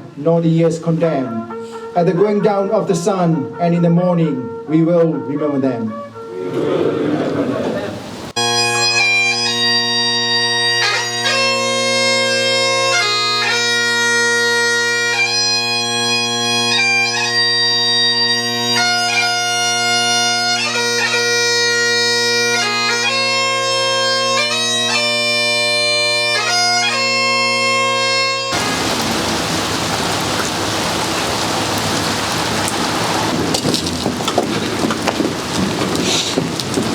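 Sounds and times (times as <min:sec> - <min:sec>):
solo bagpipe melody: 0:01.1 - 0:03.8, 0:08.4 - 0:32.6.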